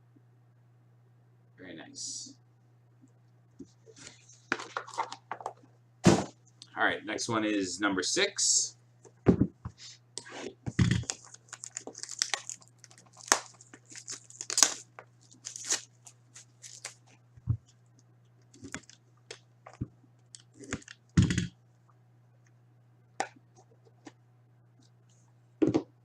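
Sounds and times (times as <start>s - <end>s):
wrapping being torn and crinkled: 11.0s - 17.2s, 18.4s - 19.0s.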